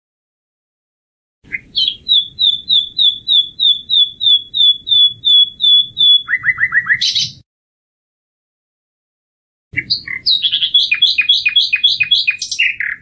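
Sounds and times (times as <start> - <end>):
nightingale singing: 1.5 - 7.4, 9.8 - 13.0.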